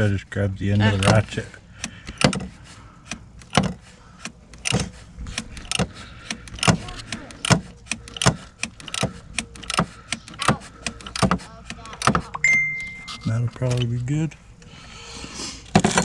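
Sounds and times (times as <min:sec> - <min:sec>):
ratchet wrench clicking: 0:03.1 - 0:12.4.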